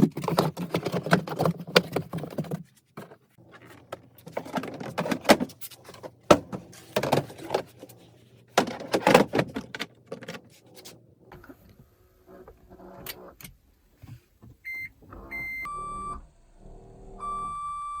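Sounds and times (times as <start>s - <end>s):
handling knocks and clicks: 0.0s - 11.0s.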